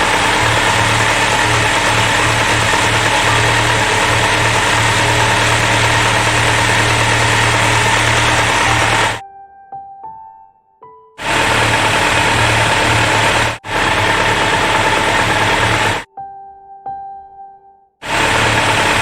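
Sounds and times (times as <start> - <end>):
motorcycle engine running: 0.0 - 9.2, 11.2 - 16.1, 18.0 - 19.0.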